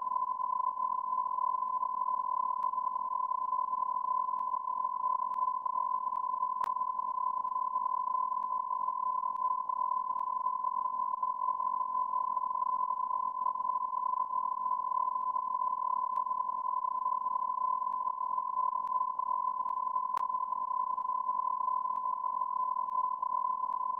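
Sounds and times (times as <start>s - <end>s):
faint clicks: 19.6s - 20.3s.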